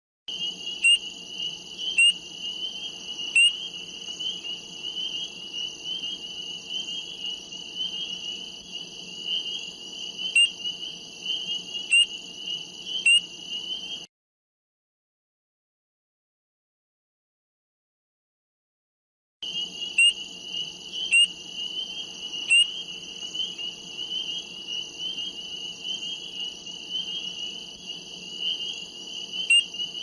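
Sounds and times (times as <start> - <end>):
short sharp frog calls: 0.3 - 8.6, 9.2 - 14.1, 19.4 - 30.0
frogs and insects trilling: 0.3 - 14.1, 19.4 - 30.0.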